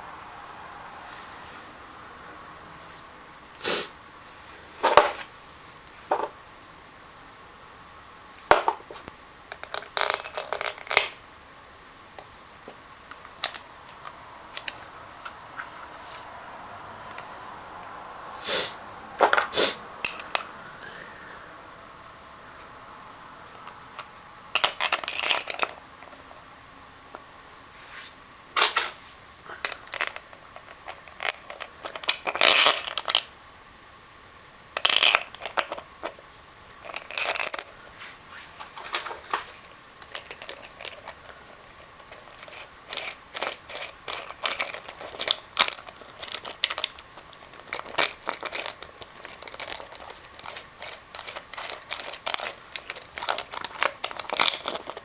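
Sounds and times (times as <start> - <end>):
metal parts and tools clinking: 9.6 - 11.2, 19.2 - 20.5, 24.0 - 25.8, 28.6 - 29.0, 29.6 - 33.3, 34.8 - 35.8, 36.8 - 37.9, 40.0 - 55.0.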